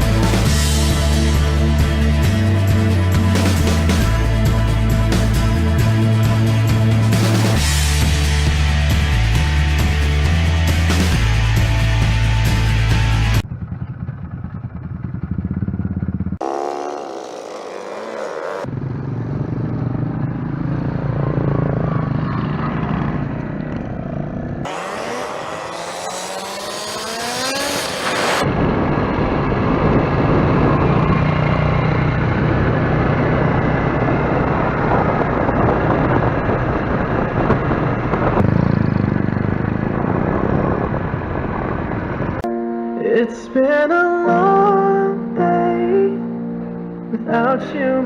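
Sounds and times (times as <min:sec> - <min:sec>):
motorcycle engine running: 0:00.0 - 0:27.4, 0:28.4 - 0:42.5
rushing noise: 0:24.7 - 0:42.4.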